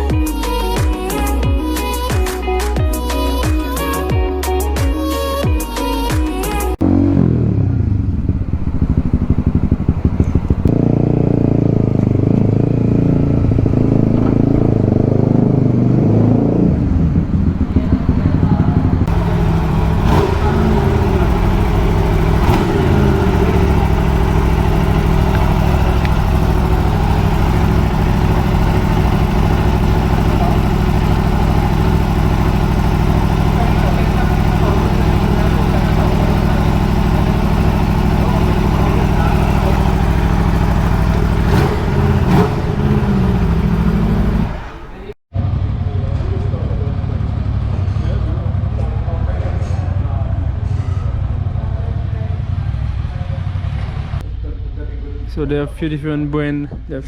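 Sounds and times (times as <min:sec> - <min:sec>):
motorcycle engine revving: 0:06.7 - 0:49.9.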